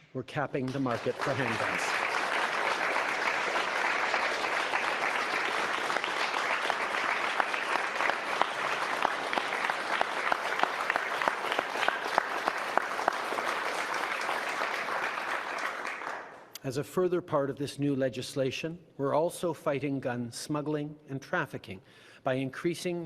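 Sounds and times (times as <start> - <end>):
audience applauding: 0.6 - 16.4.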